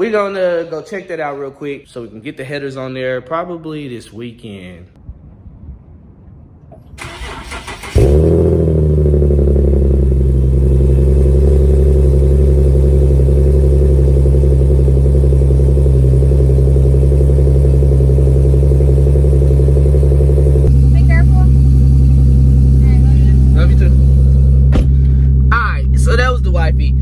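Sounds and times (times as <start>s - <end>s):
car engine starting and idling: 6.7s - 27.0s.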